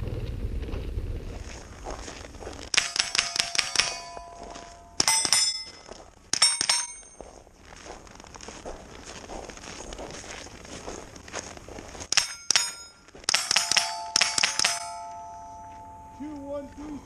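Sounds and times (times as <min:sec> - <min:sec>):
rifle shots hitting steel plates: 0:02.7 - 0:07.2, 0:12.1 - 0:16.4.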